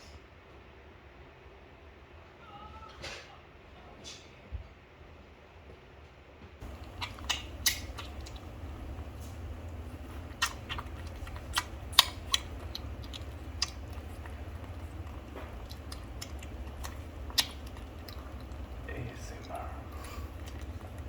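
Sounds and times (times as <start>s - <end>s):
puppy chewing and crunching food: 6.6s - 21.0s.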